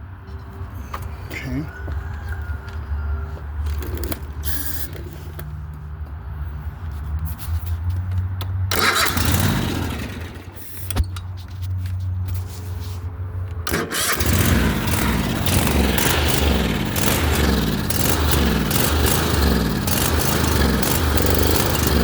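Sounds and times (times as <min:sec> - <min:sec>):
mower engine running: 0:08.7 - 0:10.6, 0:13.6 - 0:22.0
engine cranking on starter: 0:08.7 - 0:10.9, 0:13.6 - 0:22.0.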